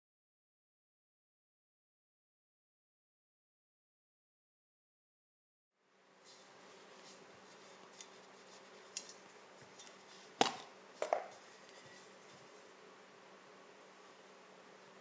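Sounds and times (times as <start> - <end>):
low steady hum: 5.8 - 15.0
hard objects knocking and clicking: 10.4 - 11.4.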